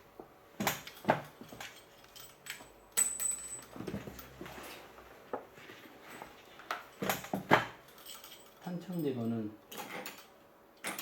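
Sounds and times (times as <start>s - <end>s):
handling noise: 0.0s - 8.6s.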